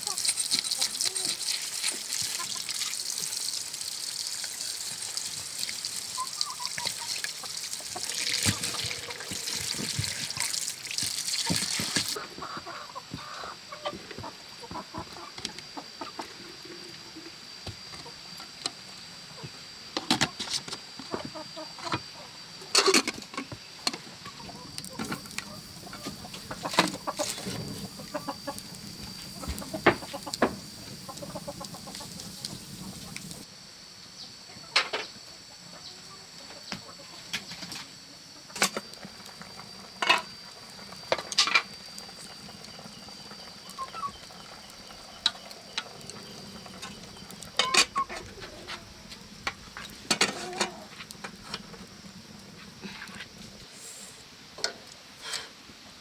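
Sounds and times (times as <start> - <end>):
steady hiss: 0.0 - 12.2, 24.5 - 34.2, 38.6 - 56.0
chickens clucking: 5.9 - 16.3, 24.3 - 33.4.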